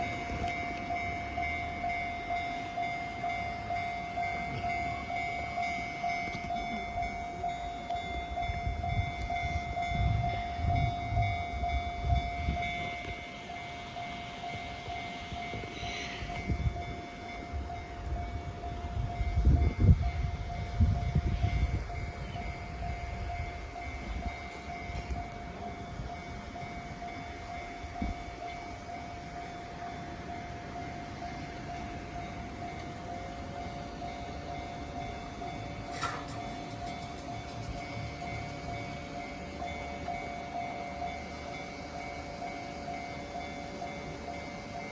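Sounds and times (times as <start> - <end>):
level-crossing warning bell: 0.0 - 44.9.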